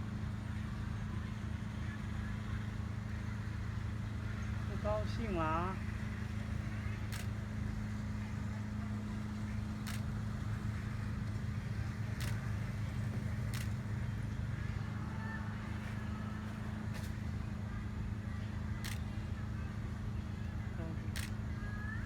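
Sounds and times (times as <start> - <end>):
low motor hum: 0.0 - 22.0
faint sharp clicks: 7.1 - 7.4, 9.8 - 10.2, 12.2 - 12.6, 13.2 - 13.8, 18.8 - 19.1, 21.2 - 21.4.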